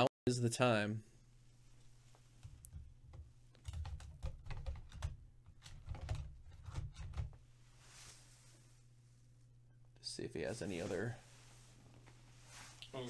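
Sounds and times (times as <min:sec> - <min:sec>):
computer keyboard typing: 0:03.6 - 0:07.3.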